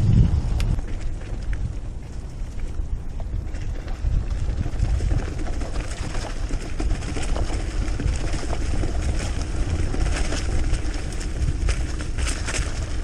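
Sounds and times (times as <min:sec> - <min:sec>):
bicycle rattles and clicks: 0:00.0 - 0:13.0
wind buffeting microphone: 0:00.0 - 0:13.0.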